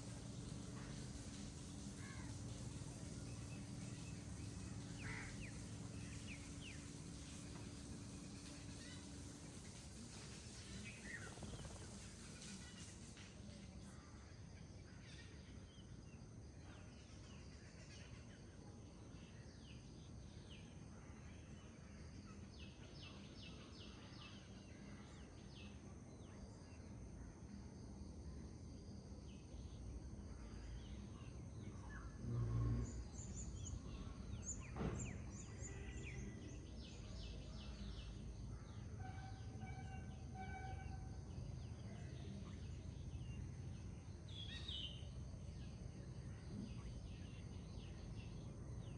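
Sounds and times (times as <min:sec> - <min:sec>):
birds singing and calling: 0:00.0 - 0:13.0, 0:44.2 - 0:45.1.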